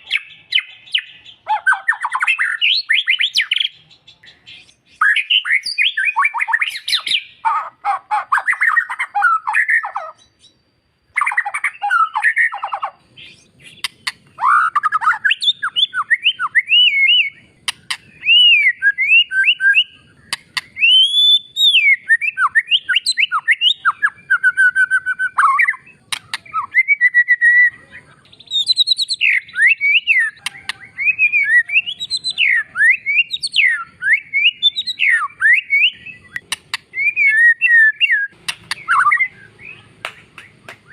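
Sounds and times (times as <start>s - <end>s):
bird harsh chattering: 0.0s - 10.4s, 11.2s - 40.9s
songbird singing: 0.0s - 40.9s
sharp bird clicks: 11.2s - 16.8s, 17.6s - 18.4s, 20.1s - 21.1s, 26.0s - 26.7s, 30.1s - 30.9s, 36.3s - 37.3s, 38.0s - 40.9s.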